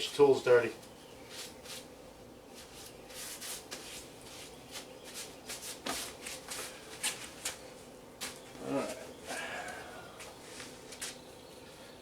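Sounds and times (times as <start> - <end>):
rustling and scraping by hand: 0.8 - 9.1.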